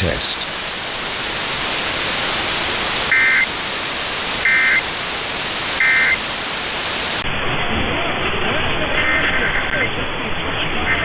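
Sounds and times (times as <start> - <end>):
static hiss: 0.0 - 7.6.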